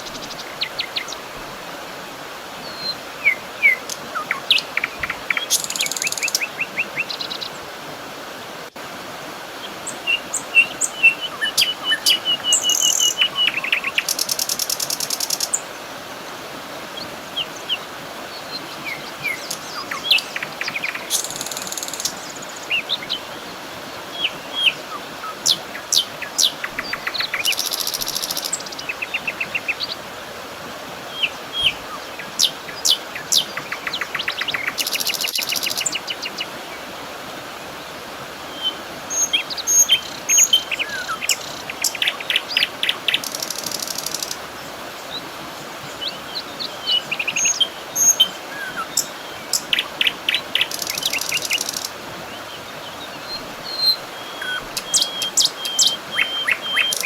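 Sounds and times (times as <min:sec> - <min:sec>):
background hiss: 0:00.0 - 0:57.0
birds chirping and trilling: 0:17.0 - 0:23.5, 0:24.1 - 0:30.0, 0:45.9 - 0:57.0.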